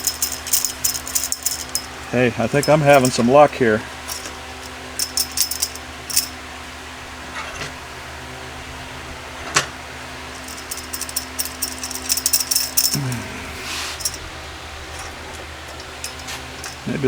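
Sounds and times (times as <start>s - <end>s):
metal tent pole clinking: 0.0s - 3.4s, 4.0s - 6.4s, 10.4s - 13.1s, 14.0s - 14.3s, 14.9s - 17.0s
steady low hum: 0.0s - 6.4s, 10.1s - 17.0s.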